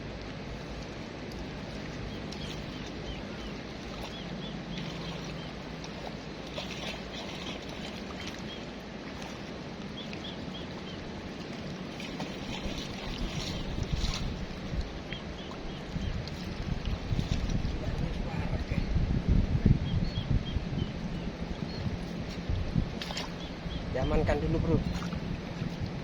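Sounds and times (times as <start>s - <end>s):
river water rushing: 0.3s - 17.9s
wind on microphone: 10.0s - 26.0s.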